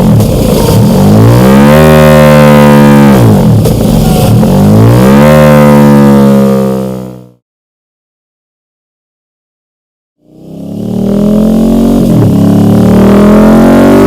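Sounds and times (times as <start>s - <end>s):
motorcycle engine revving: 0.0s - 7.4s, 10.2s - 14.0s.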